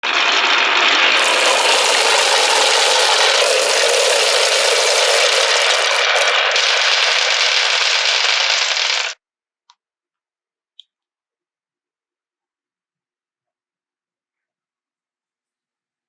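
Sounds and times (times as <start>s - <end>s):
marbles rattling along a track: 1.1s - 9.1s.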